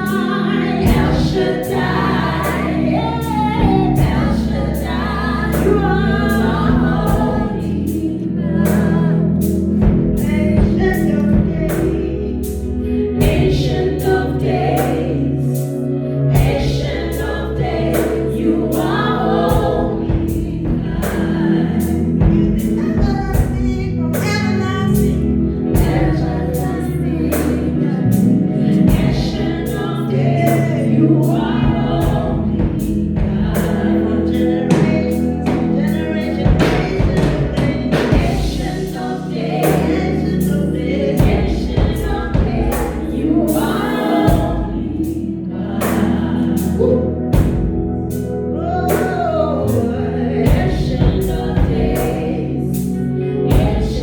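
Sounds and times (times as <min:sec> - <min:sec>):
choir singing: 0:00.0 - 0:24.2, 0:24.8 - 0:54.0
bass line: 0:00.0 - 0:54.0
drum beat: 0:22.2 - 0:23.9, 0:36.4 - 0:38.9.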